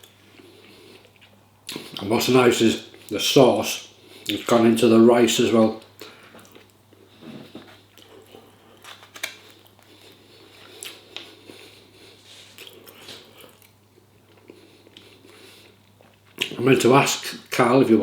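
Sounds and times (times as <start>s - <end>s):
person chewing food: 6.0s - 16.6s.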